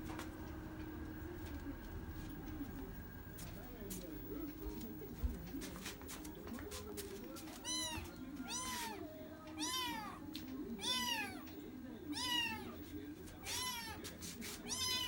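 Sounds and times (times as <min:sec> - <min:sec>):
kitten meowing: 0:07.6 - 0:09.0, 0:09.6 - 0:10.2, 0:10.8 - 0:11.4, 0:12.1 - 0:12.8, 0:13.4 - 0:14.0, 0:14.6 - 0:15.0.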